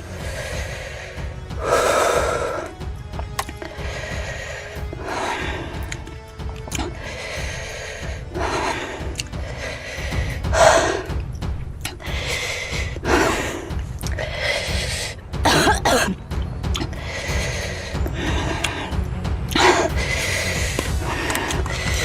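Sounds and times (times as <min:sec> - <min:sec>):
person coughing: 0:15.5 - 0:16.2.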